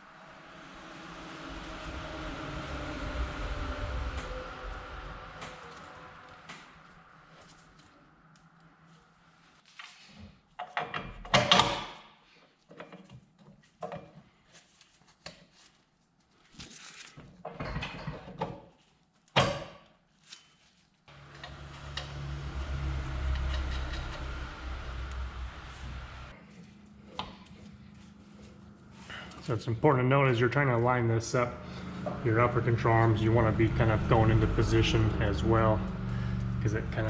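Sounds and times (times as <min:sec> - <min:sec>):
steady low hum: 0:00.0 - 0:09.7, 0:21.1 - 0:37.0
metal knocks clanks and scrapes: 0:20.4 - 0:25.2.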